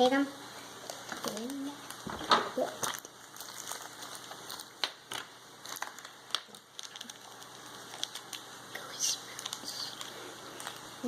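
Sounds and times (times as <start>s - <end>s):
packaging crinkling: 0.8s - 11.0s.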